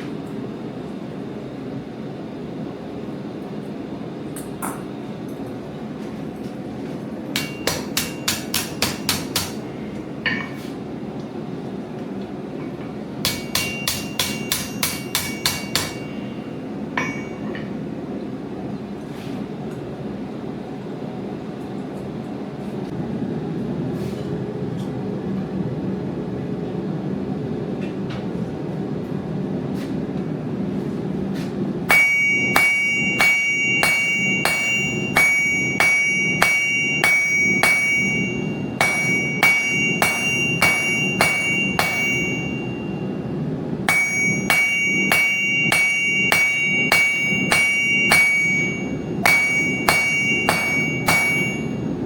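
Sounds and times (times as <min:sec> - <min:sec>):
hammer striking metal on anvil: 0:07.3 - 0:10.7, 0:13.2 - 0:17.8, 0:31.9 - 0:43.0, 0:43.9 - 0:51.9.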